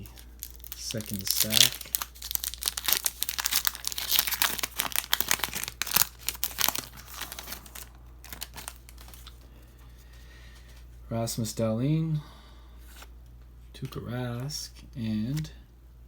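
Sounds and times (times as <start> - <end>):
foil wrapper tearing and crinkling: 0.0 - 9.3.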